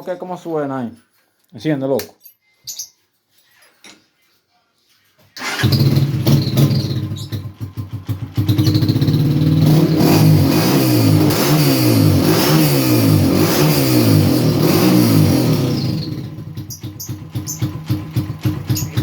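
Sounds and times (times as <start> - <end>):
motorcycle engine revving: 5.4 - 19.0
motorcycle engine lumpy idle: 5.9 - 9.5, 15.8 - 19.0.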